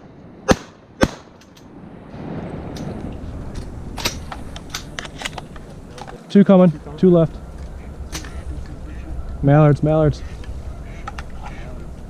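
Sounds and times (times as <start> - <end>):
shotgun shots: 0.4 - 1.4
steady rustling: 1.4 - 12.0.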